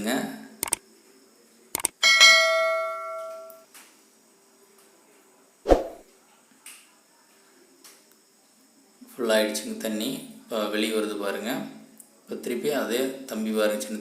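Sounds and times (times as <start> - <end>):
metal ringing bell-like: 2.0 - 3.6.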